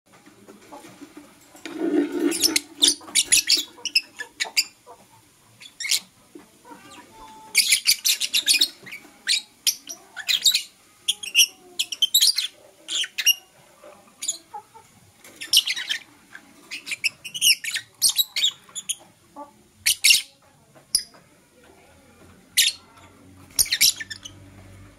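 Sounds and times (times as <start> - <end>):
lovebirds chirping: 2.2 - 5.0, 6.8 - 13.5, 15.2 - 16.1, 16.7 - 19.1, 22.6 - 24.6.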